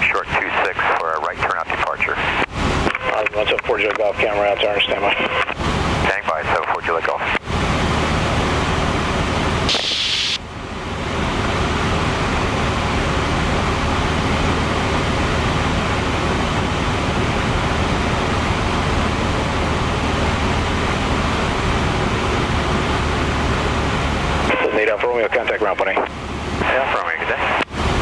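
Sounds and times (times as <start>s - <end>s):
aircraft engine and propeller drone: 0.0s - 28.0s
short hiss: 9.7s - 10.4s.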